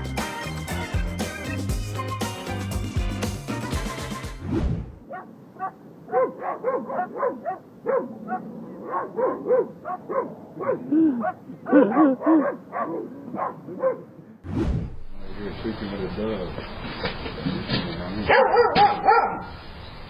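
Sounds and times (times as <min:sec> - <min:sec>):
dog barking: 0:05.1 - 0:14.2, 0:18.3 - 0:19.5.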